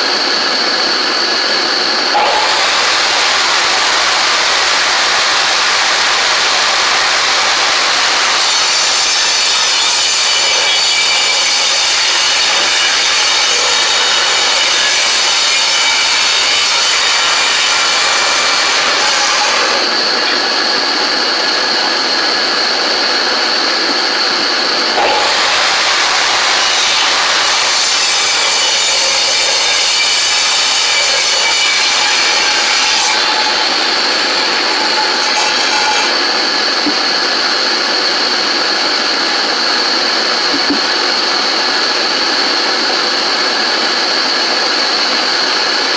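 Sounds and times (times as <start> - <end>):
table saw ripping boards: 2.1 - 19.9, 24.9 - 37.1.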